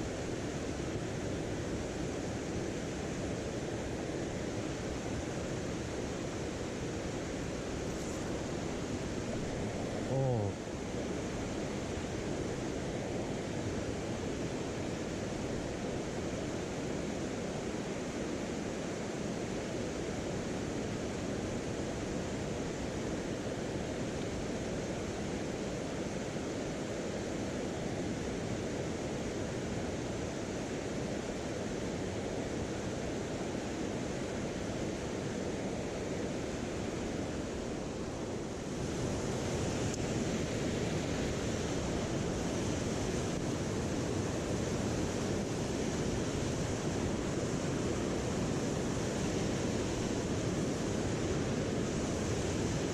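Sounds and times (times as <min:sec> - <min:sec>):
stream water rushing: 0:00.0 - 0:52.9.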